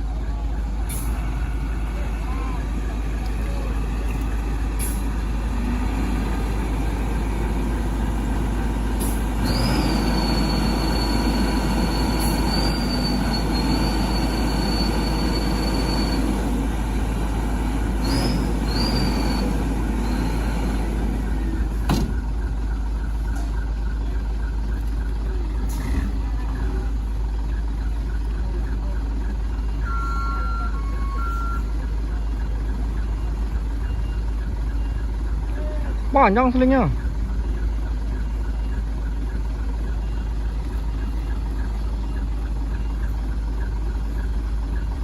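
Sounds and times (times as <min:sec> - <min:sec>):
heavy diesel machinery running: 0:00.0 - 0:45.0
high squeal: 0:09.4 - 0:16.4, 0:18.0 - 0:20.6.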